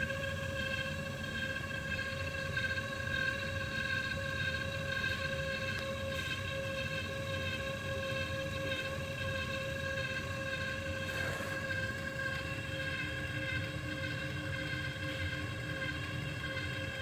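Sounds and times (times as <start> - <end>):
low motor hum: 5.7 - 14.8.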